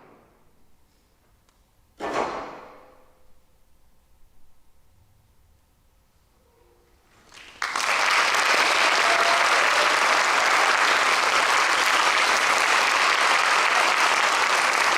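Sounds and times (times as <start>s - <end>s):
audience applause: 7.2s - 14.9s.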